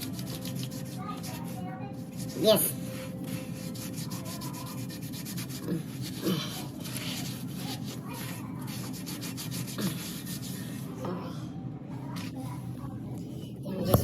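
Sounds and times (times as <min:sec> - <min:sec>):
rubbing and scraping strokes: 0:00.0 - 0:10.9
steady low hum: 0:00.0 - 0:14.0.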